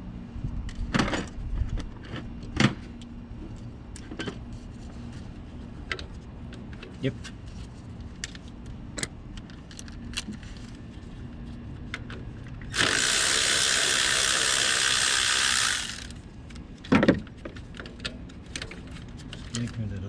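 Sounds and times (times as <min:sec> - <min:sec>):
hand ratchet clicking: 0:12.7 - 0:16.2.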